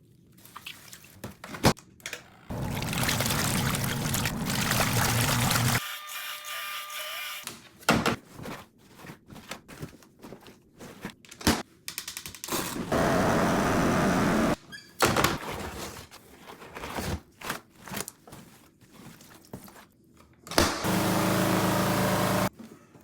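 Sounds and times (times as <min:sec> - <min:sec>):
water pouring into a tub: 0:02.5 - 0:05.8.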